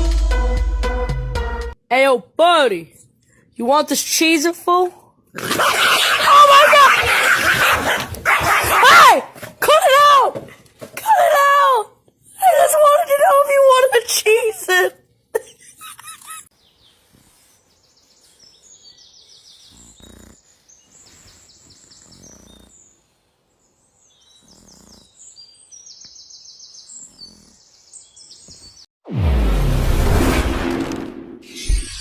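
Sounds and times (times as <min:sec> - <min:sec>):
birds chirping: 0:16.2 - 0:28.9
sudden loud noise: 0:29.0 - 0:32.0.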